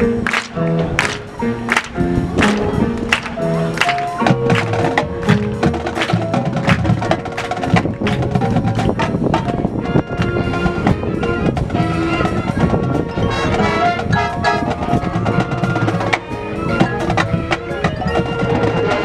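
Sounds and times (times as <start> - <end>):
rapid drum strokes: 0.0 - 9.8
marching band playing: 0.0 - 19.0
held horn notes: 9.5 - 17.7.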